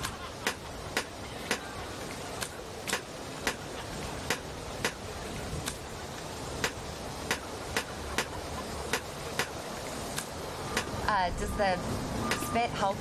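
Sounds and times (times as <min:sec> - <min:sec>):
steady background noise: 0:00.0 - 0:13.0.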